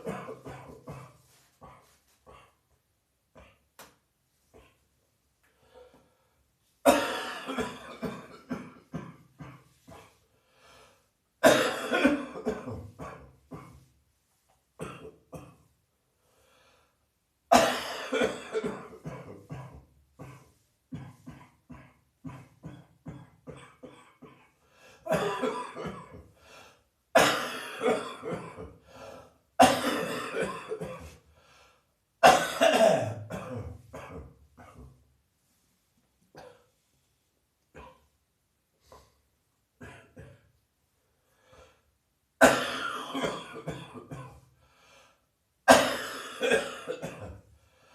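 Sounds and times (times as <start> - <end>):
person coughing: 0.0 - 2.6, 6.8 - 10.2, 11.4 - 13.9, 14.8 - 15.7, 17.5 - 26.3, 27.2 - 28.8, 29.6 - 31.2, 32.2 - 34.9, 36.3 - 36.7, 39.8 - 40.5, 42.4 - 44.4, 45.7 - 47.5.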